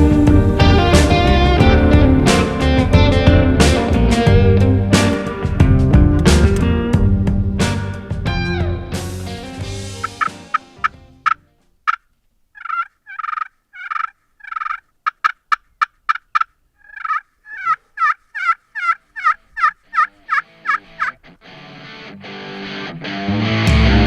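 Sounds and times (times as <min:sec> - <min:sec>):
turkey clicking notes: 0:00.0 - 0:21.3
turkey yelping: 0:10.0 - 0:21.3.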